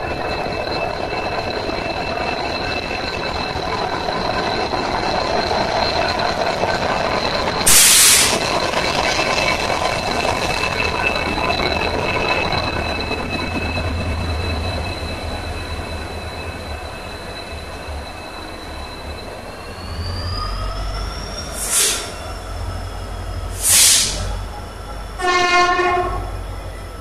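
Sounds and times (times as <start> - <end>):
diesel locomotive rumble and whine: 0.0 - 27.0
short hisses: 21.6 - 22.2, 23.6 - 24.2
train horn blast: 25.2 - 26.3.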